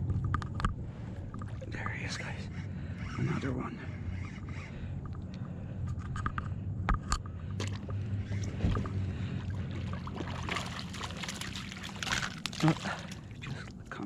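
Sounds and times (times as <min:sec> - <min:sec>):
water splashing and sloshing: 0:00.0 - 0:02.0, 0:07.2 - 0:14.0
steady low hum: 0:00.0 - 0:14.0.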